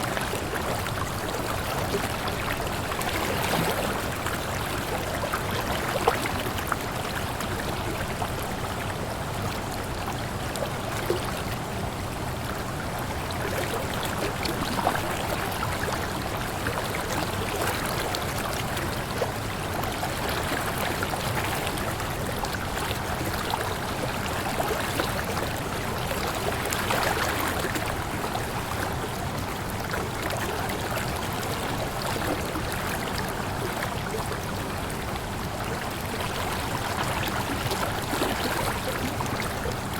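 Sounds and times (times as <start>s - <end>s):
water splashes and gurgles: 0.0s - 39.9s.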